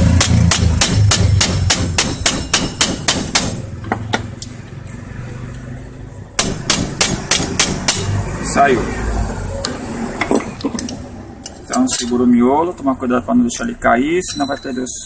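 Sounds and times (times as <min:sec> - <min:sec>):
hammer striking metal nail: 0:00.0 - 0:03.7, 0:06.4 - 0:08.2.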